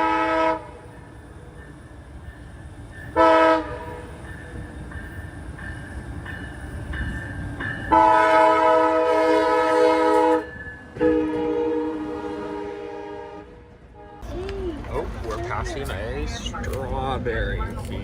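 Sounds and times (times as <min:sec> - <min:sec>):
train horn blasts: 0:00.0 - 0:00.9, 0:03.1 - 0:04.1, 0:07.9 - 0:14.4
train rumbling: 0:00.0 - 0:18.0.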